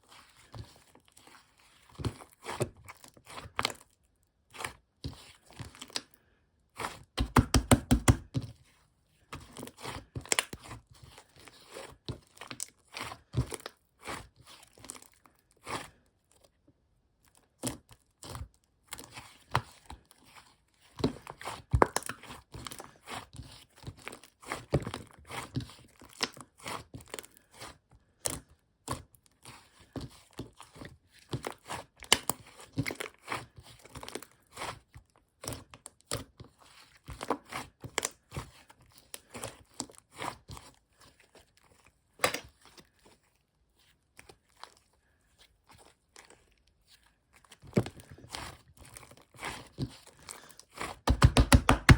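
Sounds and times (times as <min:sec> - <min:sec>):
crackling and crinkling: 0:28.4 - 0:51.9.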